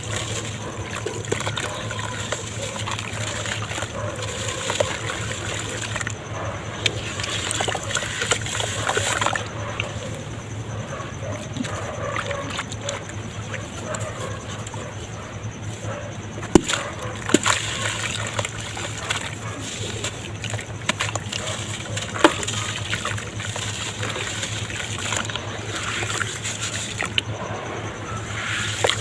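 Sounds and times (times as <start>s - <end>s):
dirt crumbling in water: 0.0s - 6.2s, 6.8s - 10.0s, 16.4s - 27.2s
small splashes: 16.5s - 27.2s.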